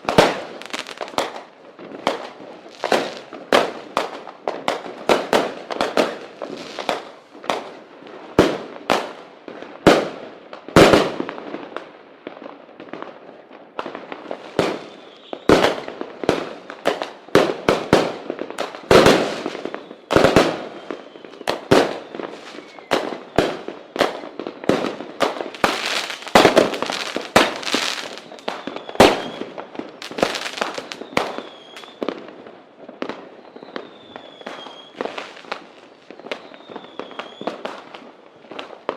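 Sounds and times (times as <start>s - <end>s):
firework rockets banging: 0.0s - 7.7s, 15.5s - 32.2s
faint short whistles: 33.4s - 35.0s, 36.2s - 37.6s.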